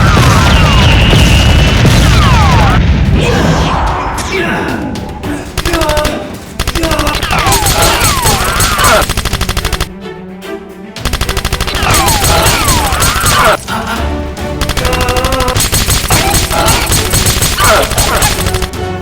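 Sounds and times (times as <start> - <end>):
background music: 0.0 - 19.0
machine gun fire: 5.6 - 9.9, 11.0 - 13.6, 14.6 - 18.8.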